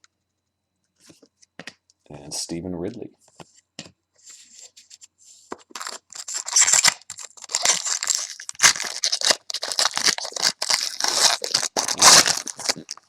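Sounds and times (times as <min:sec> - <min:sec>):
foil wrapper tearing and crinkling: 0:05.6 - 0:13.0.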